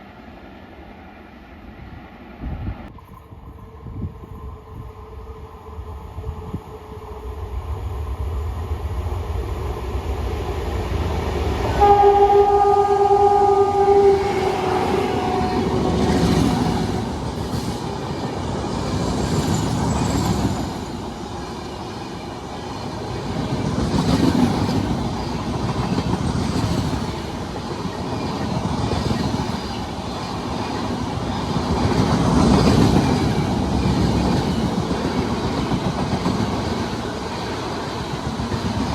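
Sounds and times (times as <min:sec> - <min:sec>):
train horn: 0:11.6 - 0:17.2
train wheels clacking on rails: 0:13.8 - 0:38.9.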